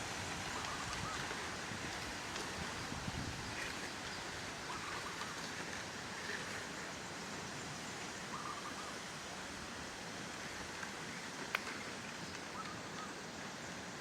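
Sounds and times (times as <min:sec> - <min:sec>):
outdoor ambient hiss: 0:00.0 - 0:14.0
faint bird calling: 0:04.6 - 0:05.5, 0:08.3 - 0:09.0, 0:12.5 - 0:13.2.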